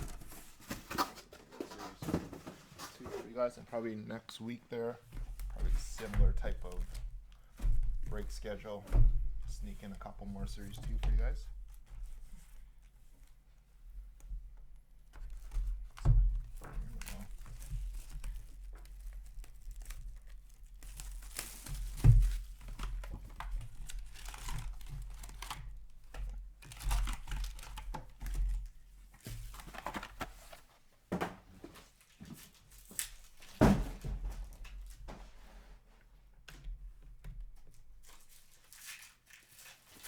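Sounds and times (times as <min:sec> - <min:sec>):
boxes knocking: 0:00.0 - 0:03.3, 0:33.6 - 0:35.2
plastic wrap crinkling and tearing: 0:16.8 - 0:28.6, 0:38.0 - 0:40.0.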